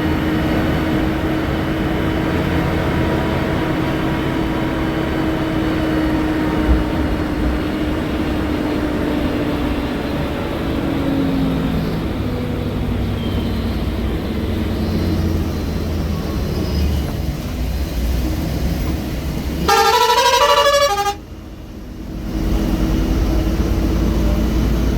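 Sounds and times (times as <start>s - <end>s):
bus diesel engine running: 0.0s - 24.9s
musical horn: 19.7s - 21.2s.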